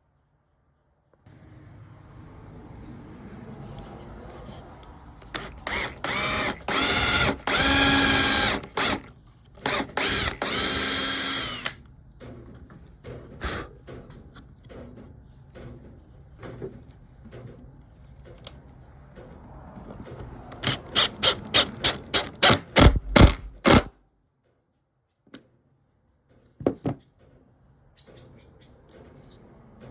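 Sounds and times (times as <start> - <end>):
power drill whining: 5.2 - 11.8, 20.6 - 23.9.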